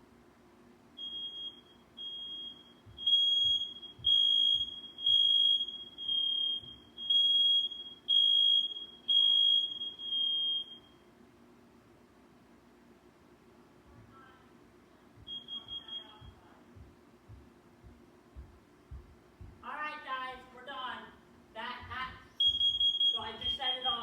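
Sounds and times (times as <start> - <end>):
smoke alarm high-pitched beeps: 1.0 - 11.1, 15.2 - 16.5, 22.3 - 24.0.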